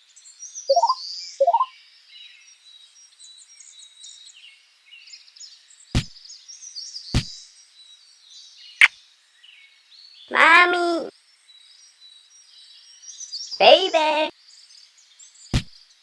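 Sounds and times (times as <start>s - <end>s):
birds chirping: 0.7s - 1.7s, 10.3s - 11.1s, 13.6s - 14.3s
short rising bird calls: 0.7s - 1.7s
sharp knocks: 6.0s - 6.2s, 7.2s - 7.4s.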